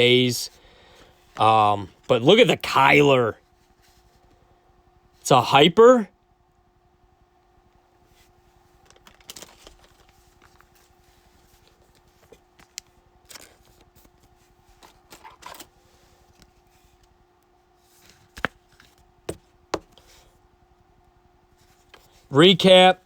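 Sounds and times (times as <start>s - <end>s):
faint steady hum: 0.0s - 23.0s
trading cards rustling: 8.7s - 17.0s.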